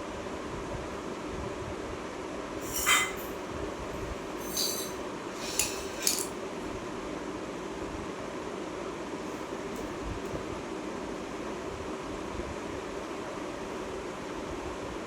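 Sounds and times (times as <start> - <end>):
steady background hum: 0.0 - 15.0
metallic clinks and scrapes: 2.6 - 3.4, 4.4 - 6.3.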